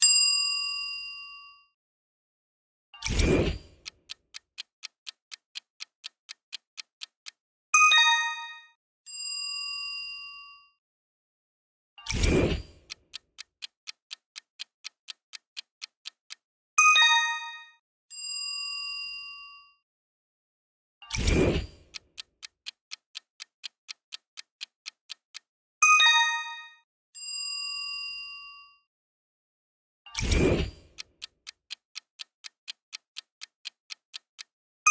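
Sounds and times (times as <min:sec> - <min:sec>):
clock ticking: 0:03.0 - 0:08.7, 0:12.1 - 0:17.7, 0:21.1 - 0:26.8, 0:30.3 - 0:34.9
bright chime: 0:07.9 - 0:08.6, 0:17.0 - 0:17.7.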